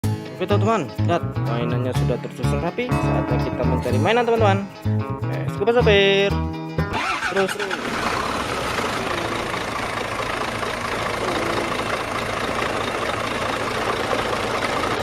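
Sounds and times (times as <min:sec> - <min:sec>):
engine running at low revs: 0:07.7 - 0:15.0.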